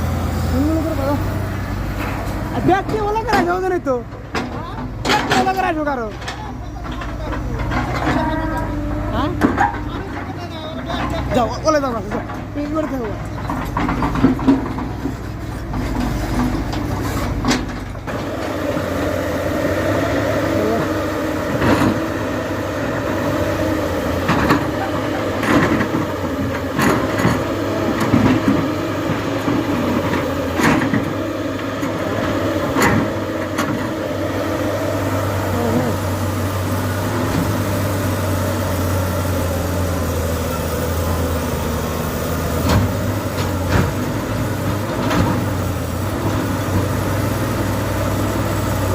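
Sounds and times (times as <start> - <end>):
diesel engine running: 0.0 - 48.9
metallic knocks and clanks: 4.2 - 8.2.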